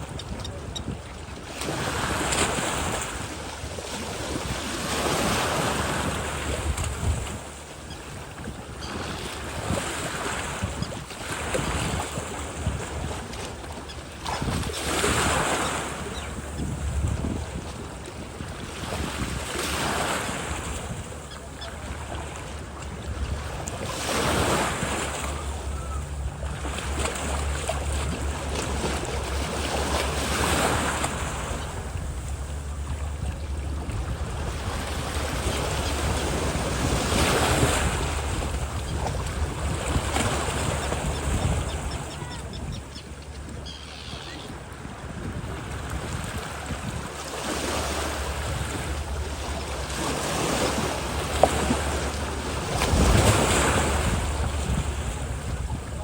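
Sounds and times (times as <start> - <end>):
wind rumbling on microphone: 0.0 - 56.0
ocean surf breaking: 11.2 - 42.6, 44.6 - 56.0.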